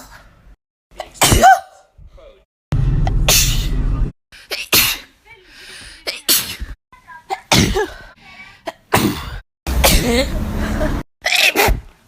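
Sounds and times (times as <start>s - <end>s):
people sneezing: 6.0s - 8.0s.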